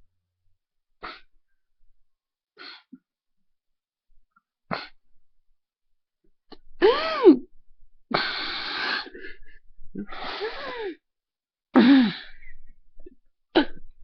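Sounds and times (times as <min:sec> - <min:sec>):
person coughing and wheezing: 0:11.8 - 0:12.5, 0:13.5 - 0:14.0.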